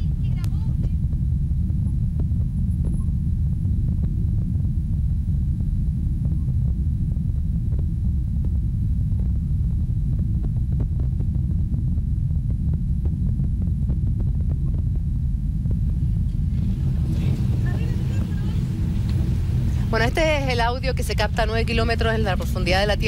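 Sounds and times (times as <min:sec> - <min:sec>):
dense low rumble: 0:00.0 - 0:23.0
crackling clicks: 0:15.6 - 0:20.2.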